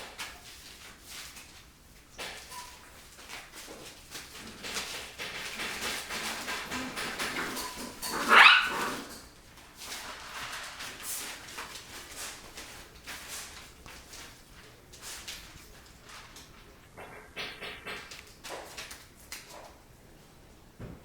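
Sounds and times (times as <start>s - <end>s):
puppies scuffling: 0.0s - 17.0s
puppy crying: 8.2s - 9.1s.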